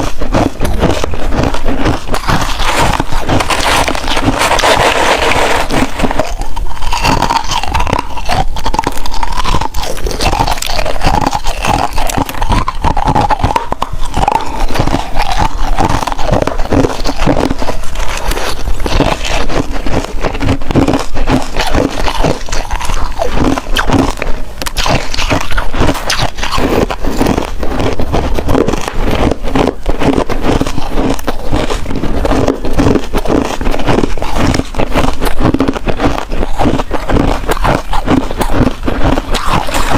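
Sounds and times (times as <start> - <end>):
ice crunching being chewed: 0.0 - 39.9.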